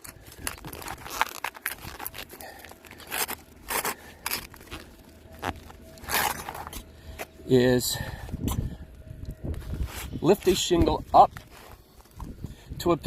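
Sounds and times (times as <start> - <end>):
roof shingles scraping and tearing: 0.0 - 6.8.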